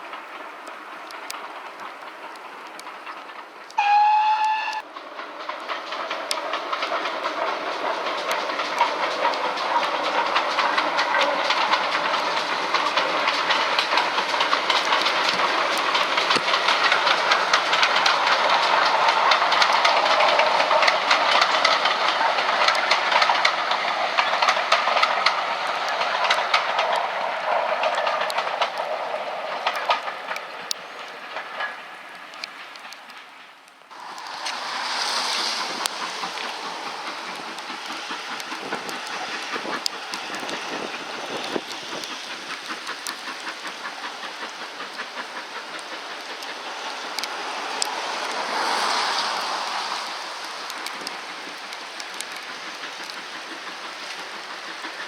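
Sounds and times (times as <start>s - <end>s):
train passing: 0.0s - 55.0s
wheels clicking over rail joints: 0.0s - 55.0s
steam locomotive whistle: 3.8s - 4.9s.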